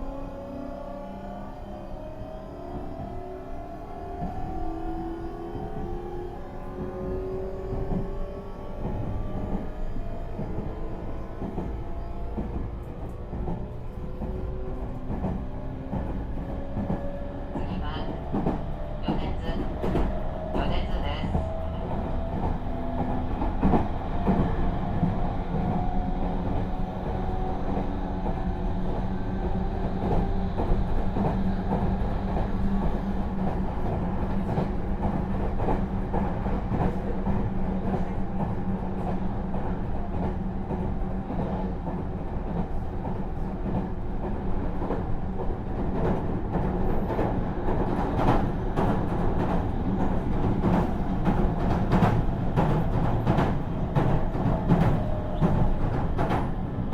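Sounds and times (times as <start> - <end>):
train running rumble: 0.0 - 56.9.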